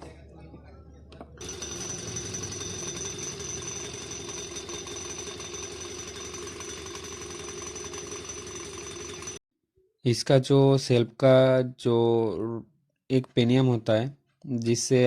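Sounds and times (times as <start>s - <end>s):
scooter engine running: 1.3s - 9.4s.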